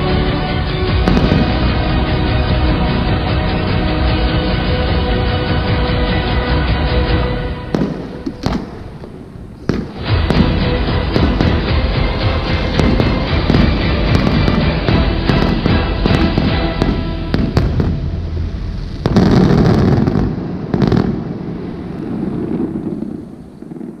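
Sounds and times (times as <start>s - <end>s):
fireworks bursting and crackling: 0.9s - 3.0s, 7.6s - 24.0s.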